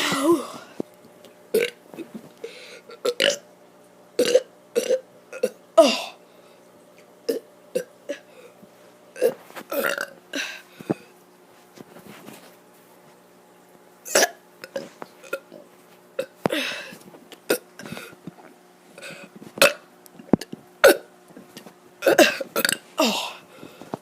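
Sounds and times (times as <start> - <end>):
child burping: 0.0 - 0.7, 1.5 - 2.1, 3.0 - 3.4, 4.2 - 6.2, 9.2 - 10.6, 22.0 - 23.4.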